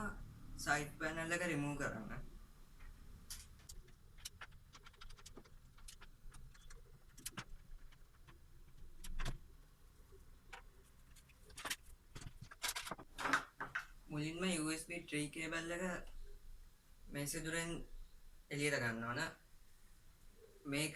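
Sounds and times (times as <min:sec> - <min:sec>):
small metal clicks and taps: 0:02.8 - 0:09.4.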